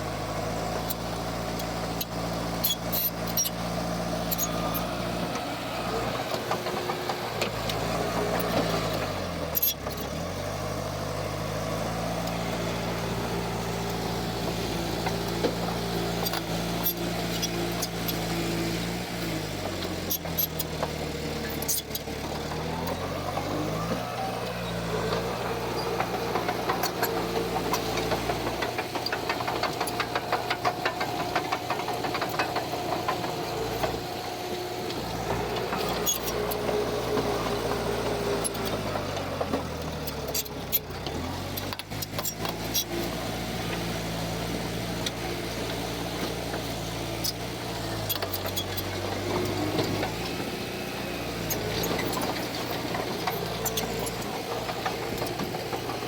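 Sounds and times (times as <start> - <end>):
diesel engine running: 0.0 - 56.0
sharp metal clanks and ticks: 4.2 - 5.4, 15.0 - 18.5, 19.7 - 22.7, 25.1 - 34.2, 34.9 - 37.3, 38.3 - 43.1, 48.0 - 50.6, 51.4 - 56.0.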